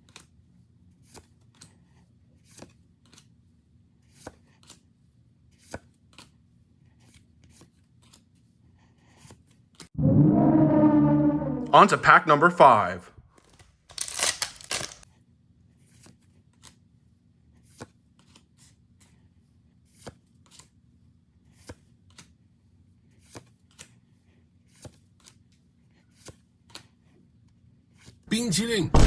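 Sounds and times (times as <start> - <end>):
card pack rustling: 13.9 - 15.0.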